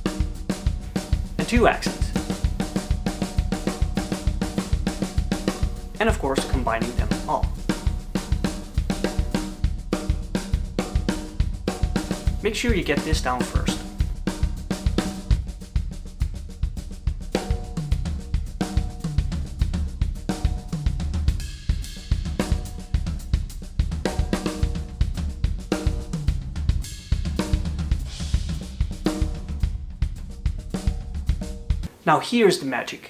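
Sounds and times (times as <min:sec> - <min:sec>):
snare drum strokes: 0:00.8 - 0:09.6, 0:12.0 - 0:14.1.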